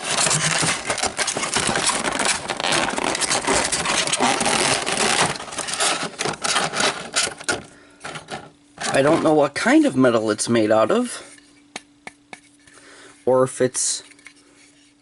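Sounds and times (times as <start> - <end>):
packaging crinkling: 0.0 - 9.3.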